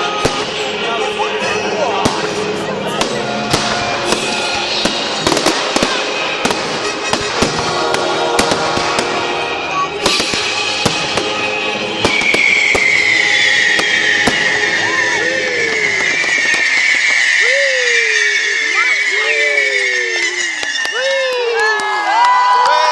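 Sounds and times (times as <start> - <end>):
fireworks bangs and crackles: 0.0 - 22.6
music playing: 0.0 - 22.9
high falling whistle: 10.2 - 22.7.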